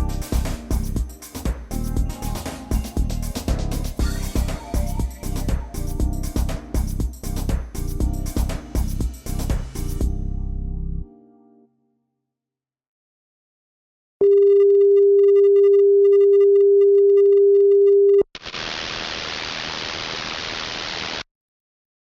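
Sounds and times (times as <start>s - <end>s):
static hiss: 18.4s - 21.3s.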